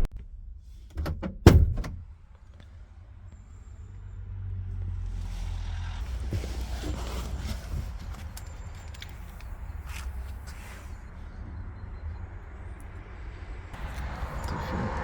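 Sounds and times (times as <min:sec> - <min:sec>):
low steady rumble: 0:00.0 - 0:05.4
van door shutting and latching: 0:00.9 - 0:02.1.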